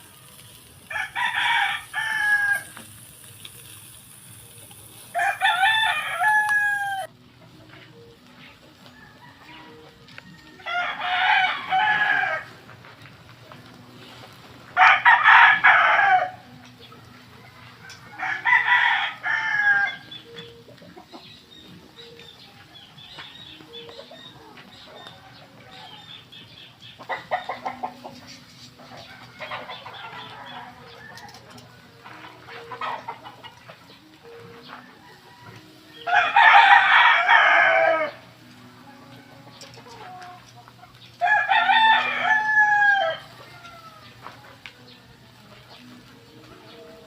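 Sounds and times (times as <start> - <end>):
rooster crowing: 0.9 - 2.9, 5.1 - 7.1, 8.8 - 12.6, 14.8 - 16.6, 17.8 - 20.1, 28.8 - 33.4, 34.7 - 38.4, 41.2 - 45.5.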